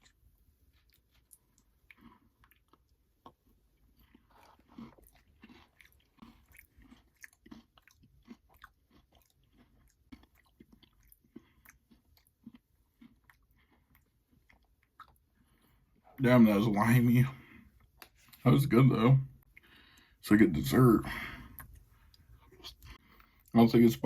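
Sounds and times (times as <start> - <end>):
chewing and mouth sounds: 0.0 - 16.2, 17.6 - 18.4, 21.4 - 23.6.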